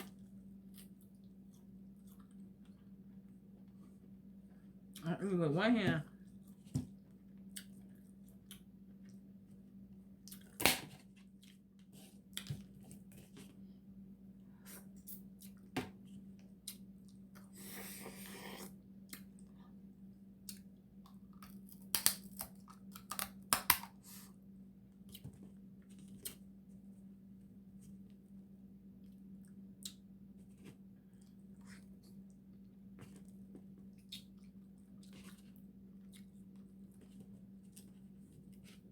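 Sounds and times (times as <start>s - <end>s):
crab shell cracking: 21.3s - 23.9s
chewing: 33.0s - 38.6s.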